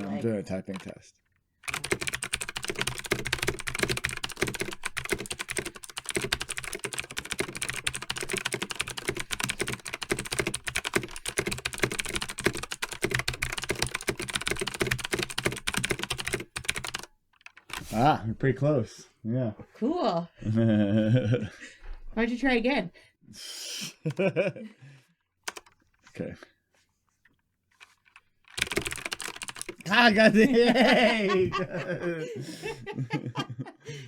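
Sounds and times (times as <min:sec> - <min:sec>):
fast keyboard typing: 0:00.7 - 0:01.0, 0:01.6 - 0:18.1, 0:25.5 - 0:25.8, 0:27.8 - 0:31.0.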